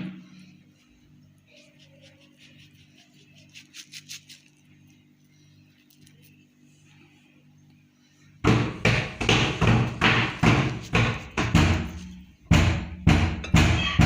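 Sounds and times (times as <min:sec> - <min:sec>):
heavy kitchen thuds: 0:08.4 - 0:14.0.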